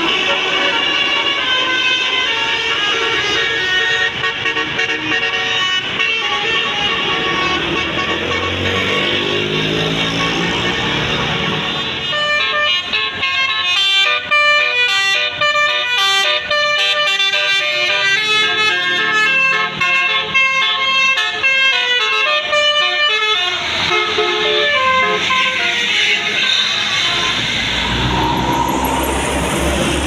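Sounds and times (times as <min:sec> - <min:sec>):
multi-tone bus horn melody: 0:00.0 - 0:30.0
noisy rush: 0:25.2 - 0:30.0.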